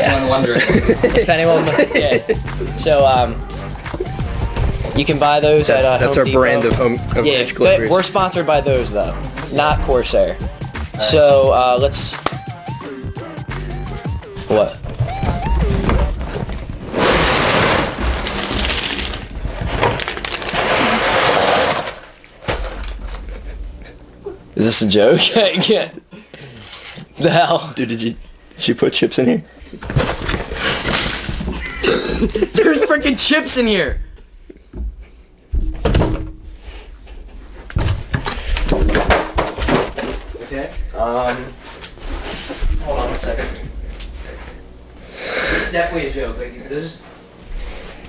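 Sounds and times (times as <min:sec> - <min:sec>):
hands crinkling through chip bags: 0:16.2 - 0:23.3, 0:30.6 - 0:31.8.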